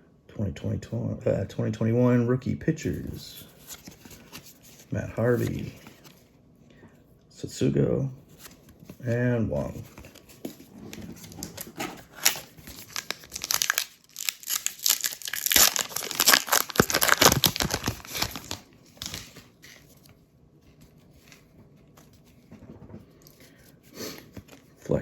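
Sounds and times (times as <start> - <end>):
wrapper tearing and crinkling: 11.2 - 19.4.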